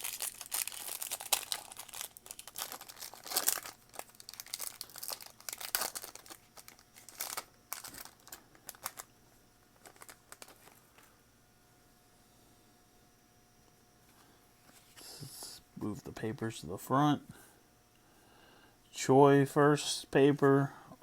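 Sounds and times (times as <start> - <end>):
foil wrapper tearing and crinkling: 0.0 - 9.1, 9.8 - 10.8.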